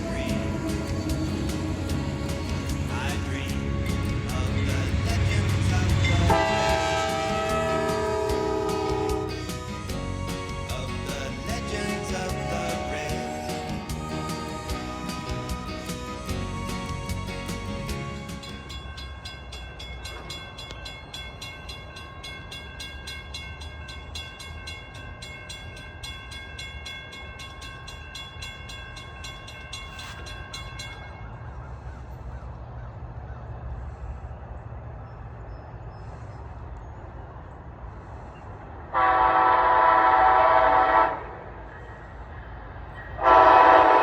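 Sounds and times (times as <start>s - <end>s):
train rumble: 0.0s - 44.0s
bell ringing: 6.0s - 15.7s, 18.1s - 31.6s
train horn blast: 6.3s - 9.5s, 12.2s - 13.8s, 38.9s - 41.6s, 43.2s - 44.0s.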